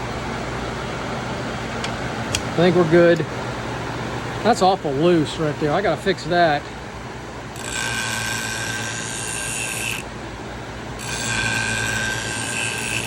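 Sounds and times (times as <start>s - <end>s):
blade grinding on abrasive wheel: 7.5s - 10.1s, 11.0s - 13.0s
sharpener motor humming: 7.5s - 10.1s, 11.0s - 13.0s.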